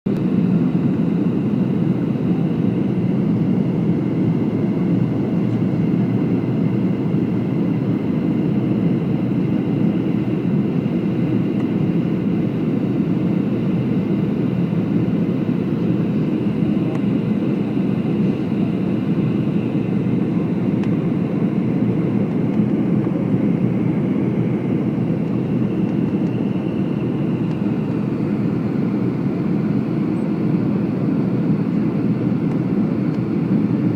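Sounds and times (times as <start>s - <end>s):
faint high engine whine: 0.1s - 33.9s
jet engine noise: 0.1s - 33.9s
airliner cabin air rush: 0.2s - 33.9s.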